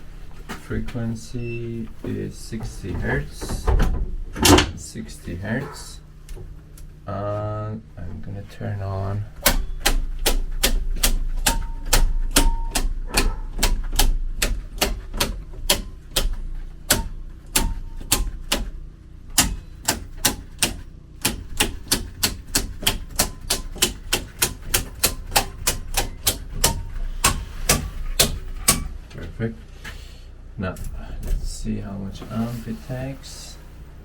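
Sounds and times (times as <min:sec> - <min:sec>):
generator humming: 0:00.0 - 0:34.0
sharp regular clicking: 0:09.4 - 0:28.9.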